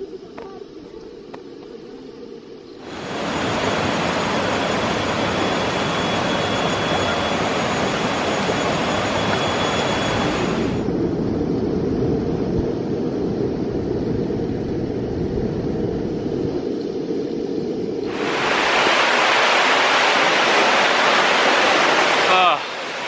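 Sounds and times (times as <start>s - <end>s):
waterfall rushing: 2.8s - 10.8s, 18.1s - 23.0s.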